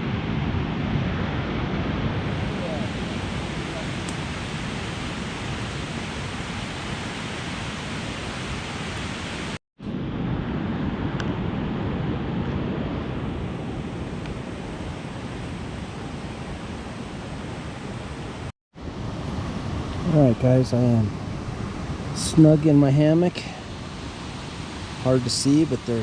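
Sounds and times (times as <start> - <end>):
river and waterfall rushing: 2.1 - 9.6, 14.3 - 26.0.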